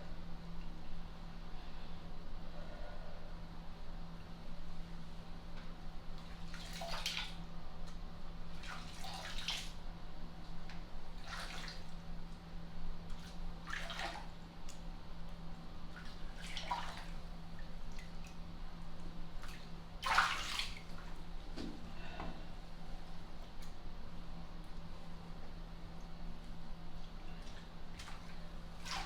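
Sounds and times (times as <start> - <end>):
steady low hum: 0.0 - 29.0
bathwater splashing: 6.2 - 7.4, 8.6 - 9.8, 11.2 - 12.0, 13.1 - 14.4, 15.9 - 17.3, 19.4 - 21.1, 27.4 - 29.0.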